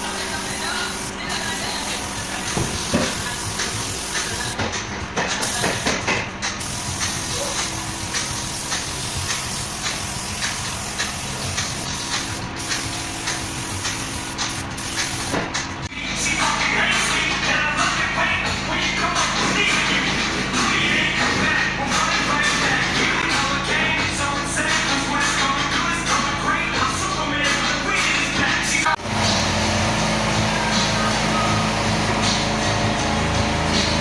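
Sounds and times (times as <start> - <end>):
paint spray gun hissing: 0.0 - 4.6, 5.4 - 6.0, 6.6 - 15.6.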